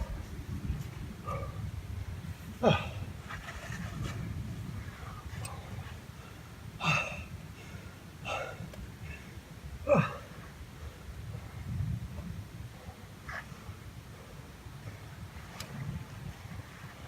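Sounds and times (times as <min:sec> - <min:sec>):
person grunting and gasping: 0:02.6 - 0:03.1, 0:06.8 - 0:07.2, 0:09.8 - 0:10.4.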